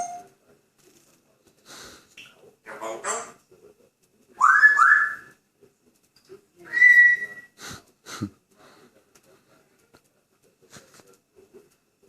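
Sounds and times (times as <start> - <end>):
parrot whistling: 4.4 - 5.3, 6.7 - 7.5.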